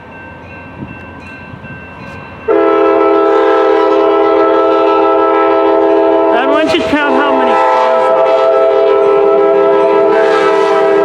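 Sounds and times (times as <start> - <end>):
train horn blowing: 2.5 - 11.0.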